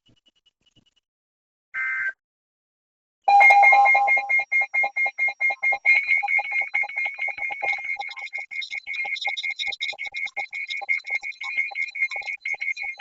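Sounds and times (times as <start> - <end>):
data tones burst: 3.3 - 5.0
electronic alarm beeping rapidly: 3.3 - 10.2.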